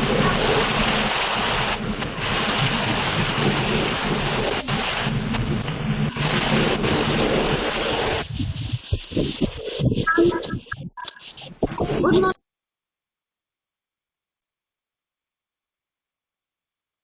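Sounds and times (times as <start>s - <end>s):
loud even rushing noise: 0.0s - 12.4s.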